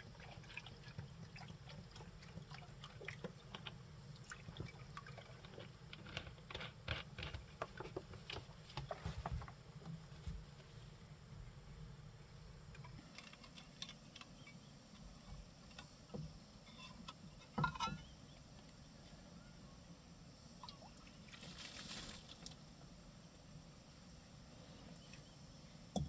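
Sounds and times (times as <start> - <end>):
rustling hiss: 20.4 - 25.9.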